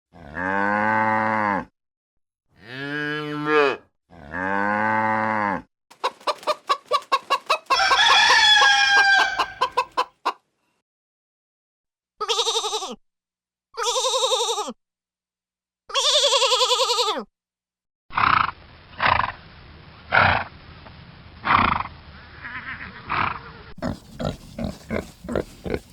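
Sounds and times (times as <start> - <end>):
chickens clucking: 5.9 - 10.4, 23.8 - 25.9
rooster crowing: 6.0 - 10.1.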